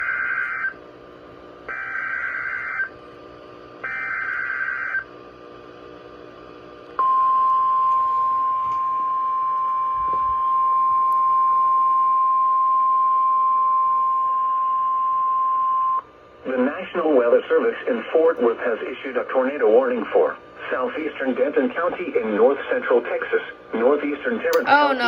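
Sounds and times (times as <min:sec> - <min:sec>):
steady alarm tone: 0:00.0 - 0:00.8, 0:01.7 - 0:03.0, 0:03.8 - 0:05.1.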